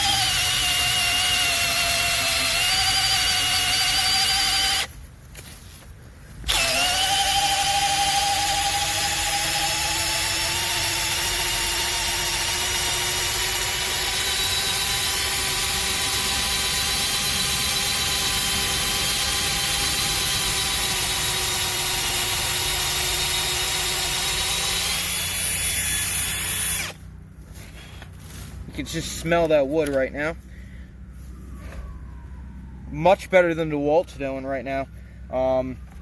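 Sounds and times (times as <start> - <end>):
cordless drill boring into wood: 0.0 - 4.9, 6.4 - 27.0.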